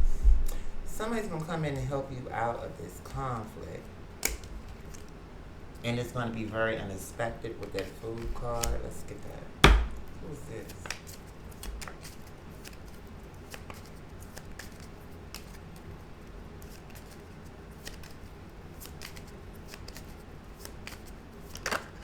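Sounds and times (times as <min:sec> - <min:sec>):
steady low hum: 0:00.0 - 0:11.5
cards clicking and rustling: 0:03.0 - 0:05.2, 0:07.0 - 0:22.0.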